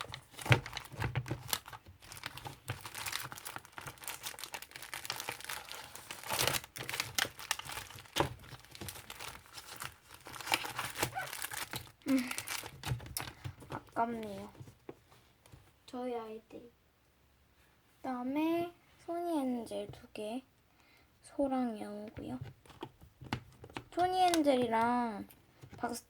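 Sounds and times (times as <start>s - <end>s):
packaging crinkling and rustling: 0.0s - 14.8s, 22.5s - 24.9s.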